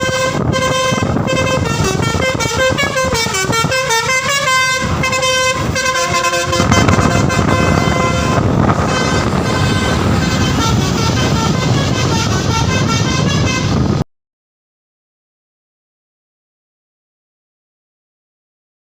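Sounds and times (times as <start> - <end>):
loud rushing noise: 0.0 - 14.0
musical bus horn tune: 0.0 - 14.0.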